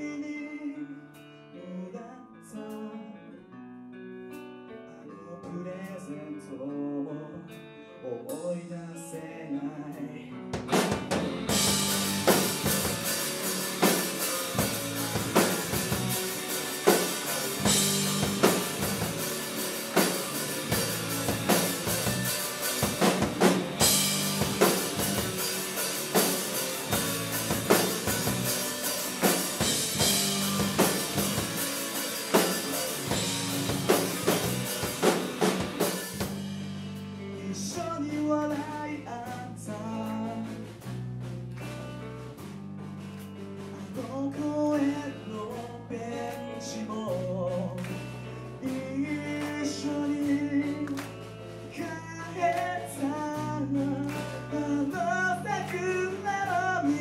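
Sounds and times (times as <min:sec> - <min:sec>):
rock band playing ballad: 0:00.0 - 0:57.0
drum kit beat with rimshots: 0:10.5 - 0:57.0.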